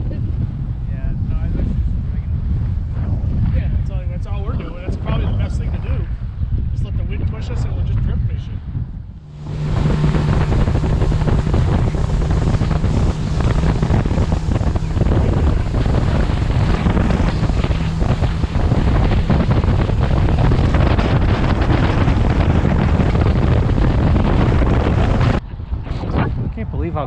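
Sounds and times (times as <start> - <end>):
wind buffeting microphone: 0.0 - 27.0
low steady hum: 8.9 - 25.6.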